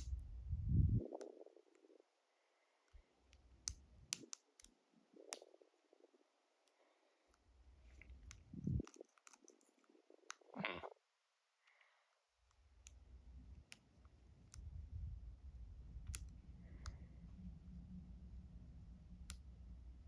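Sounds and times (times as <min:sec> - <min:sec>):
low handling rumble: 0:00.1 - 0:01.1.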